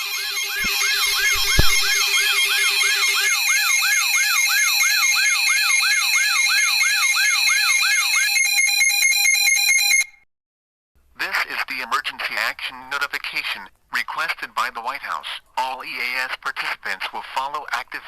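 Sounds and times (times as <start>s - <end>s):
fast sweeping siren tone: 0.1s - 5.1s
steady electronic alert tones: 0.4s - 2.7s.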